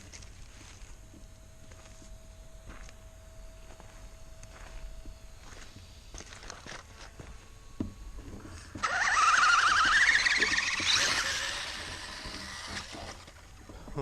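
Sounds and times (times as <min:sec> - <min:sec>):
electric motor revving whine: 0:04.4 - 0:13.7
tyres spinning in mud: 0:08.8 - 0:13.5.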